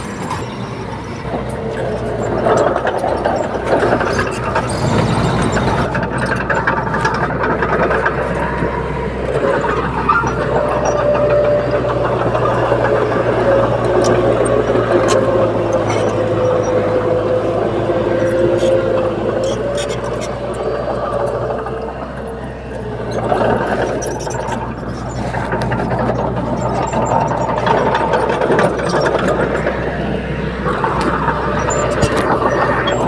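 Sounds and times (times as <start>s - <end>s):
heavy diesel machinery running: 0.0s - 33.0s.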